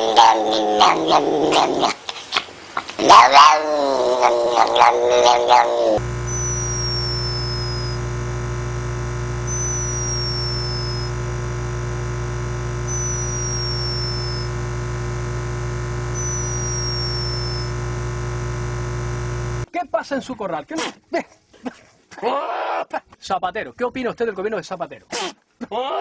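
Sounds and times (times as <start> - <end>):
steady hum: 6.0 - 19.7
high falling tone: 6.1 - 19.6.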